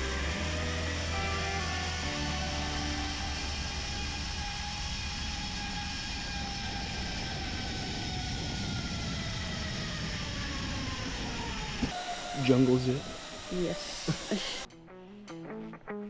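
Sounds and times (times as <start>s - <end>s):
pulleys whining on steel cable: 0.0s - 14.7s
rushing wind noise: 4.0s - 11.9s.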